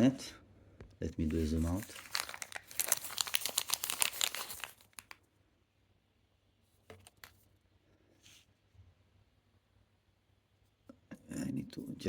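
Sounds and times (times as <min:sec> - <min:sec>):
packaging crinkling and tearing: 0:01.2 - 0:05.2.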